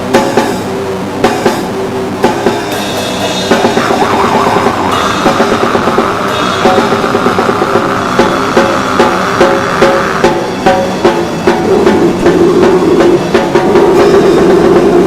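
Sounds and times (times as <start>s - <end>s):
drum hits: 0.0s - 15.0s
guitar playing: 0.0s - 15.0s
rock music: 0.0s - 15.0s.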